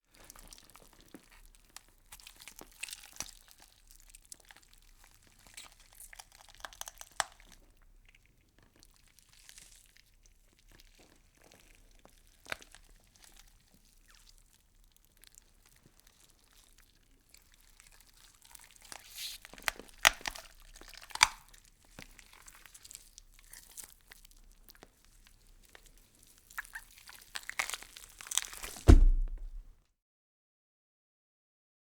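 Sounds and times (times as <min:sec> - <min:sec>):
squelchy wet meat crunching: 0:00.2 - 0:07.6, 0:16.7 - 0:29.6
heavy thud: 0:28.7 - 0:29.7.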